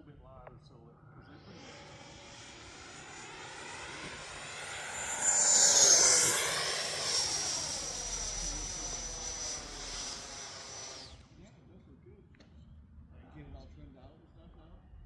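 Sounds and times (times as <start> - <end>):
electric jet fan whine fly-by: 1.1 - 11.3
rushing air: 1.3 - 11.2.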